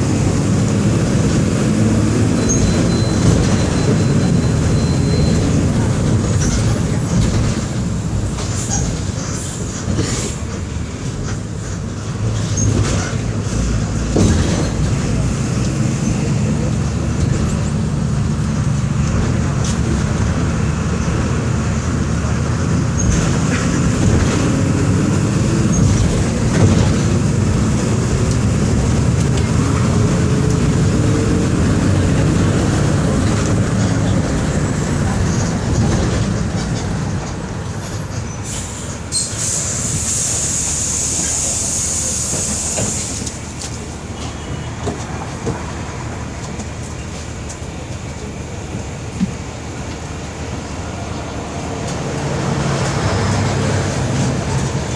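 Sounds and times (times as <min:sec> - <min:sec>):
diesel bus engine droning: 0:00.0 - 0:54.9
hiss: 0:38.4 - 0:43.4.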